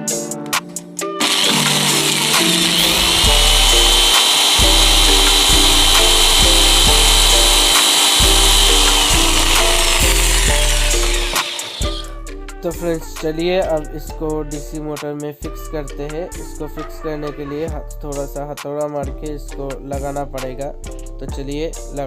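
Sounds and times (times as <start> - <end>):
background music with bass: 0.0 - 22.0
electric drill whining: 1.2 - 12.1.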